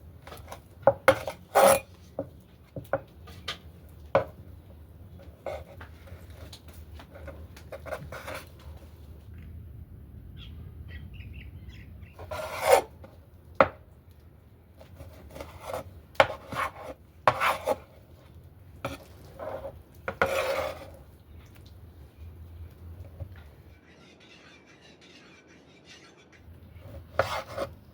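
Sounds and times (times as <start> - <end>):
utensils scraping food: 0.3 - 2.2, 5.2 - 8.9, 12.2 - 13.2, 14.8 - 21.1, 26.5 - 27.9
faint low hum: 3.6 - 15.2.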